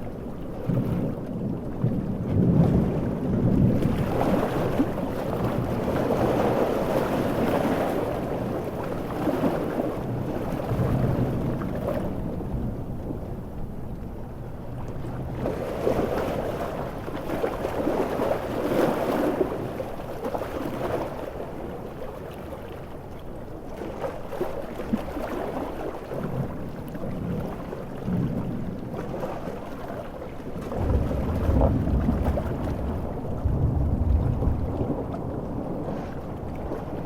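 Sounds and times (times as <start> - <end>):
rain: 0.0 - 18.5, 26.2 - 29.7, 30.4 - 37.0
wind: 0.0 - 37.0
heavy surf washing: 1.8 - 37.0.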